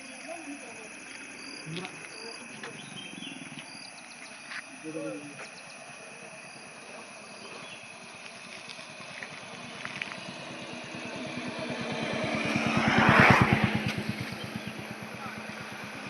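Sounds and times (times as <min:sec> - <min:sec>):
vehicle passing by: 0:07.2 - 0:16.0.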